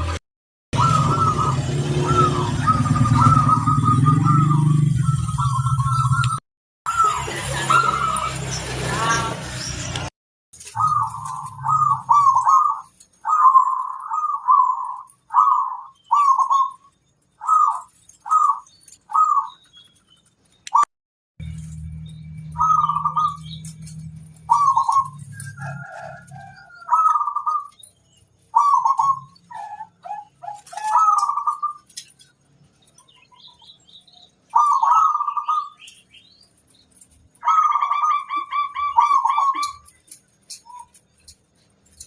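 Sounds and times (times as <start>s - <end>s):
doves cooing: 0.8s - 9.4s, 10.6s - 19.7s, 22.5s - 36.3s, 36.9s - 42.0s
low hum: 21.4s - 25.5s.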